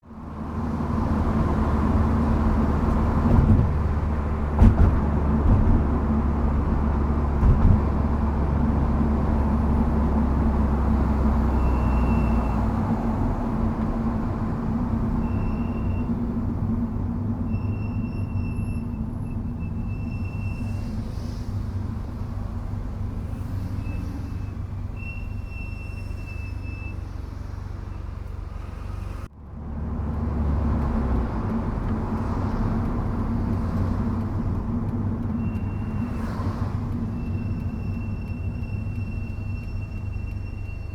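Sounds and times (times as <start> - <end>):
car engine and road noise: 0.0 - 40.9
high-pitched brake squeal: 11.3 - 13.0, 15.1 - 16.2, 17.5 - 22.2, 23.2 - 29.3, 35.4 - 40.9.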